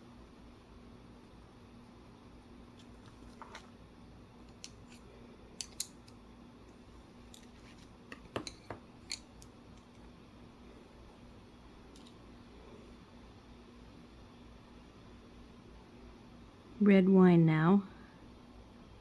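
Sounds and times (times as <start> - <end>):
wooden pencils clicking and tapping: 4.4 - 5.0, 5.6 - 6.2, 7.3 - 10.0.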